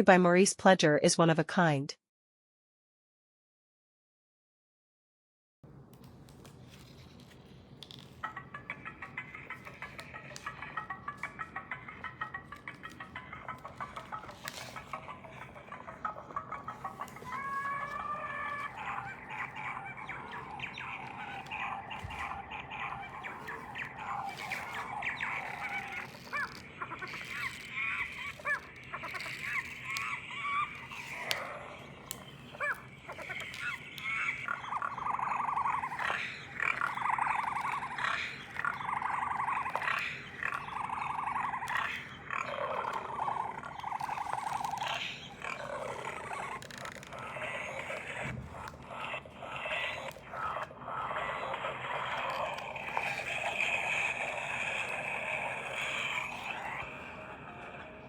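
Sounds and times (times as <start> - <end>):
mix of animal calls: 6.8 - 58.0
rasping animal calls: 7.4 - 58.0
chirping bird calls: 7.9 - 58.0.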